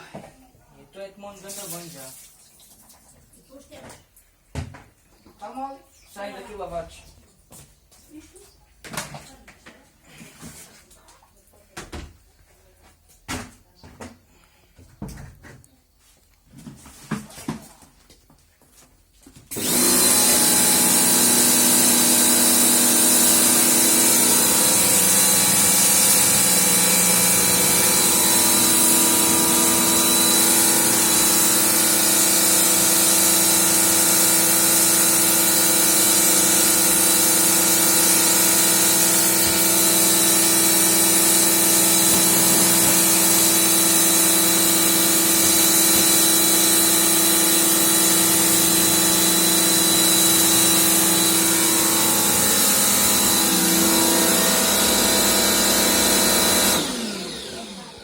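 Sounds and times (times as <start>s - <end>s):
pressure washer motor humming: 19.5s - 58.0s.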